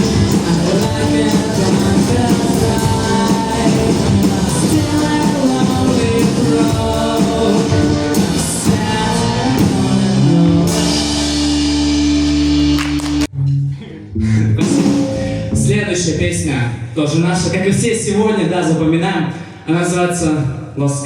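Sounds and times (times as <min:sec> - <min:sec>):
rock music: 0:00.0 - 0:13.4, 0:14.4 - 0:16.0
person singing: 0:00.0 - 0:15.7
guitar: 0:00.0 - 0:16.5
drums: 0:00.0 - 0:18.0.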